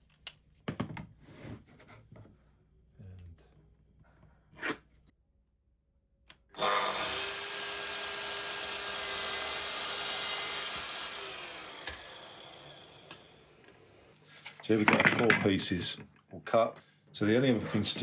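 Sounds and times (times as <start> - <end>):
power saw cutting wood: 6.6 - 14.2.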